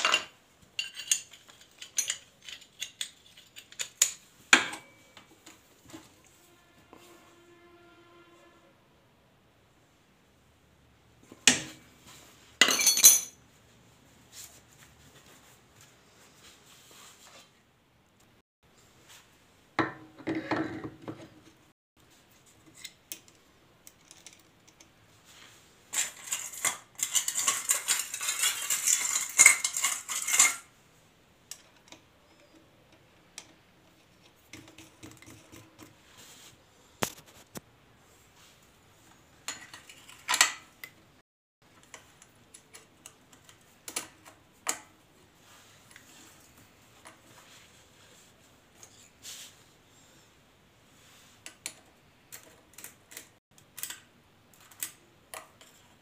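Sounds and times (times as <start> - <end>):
metal tools clinking and rattling: 0.0 - 5.2, 12.6 - 13.4, 25.9 - 30.7.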